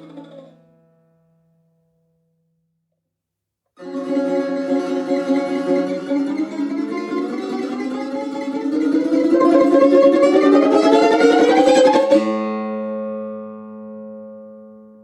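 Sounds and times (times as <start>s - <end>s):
lute note ringing: 3.8s - 12.4s
lute tremolo picking: 3.8s - 12.9s.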